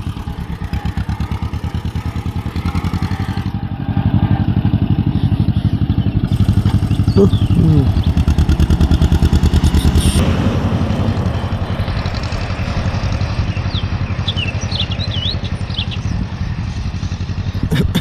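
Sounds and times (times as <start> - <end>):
tractor engine popping: 5.0 - 18.0.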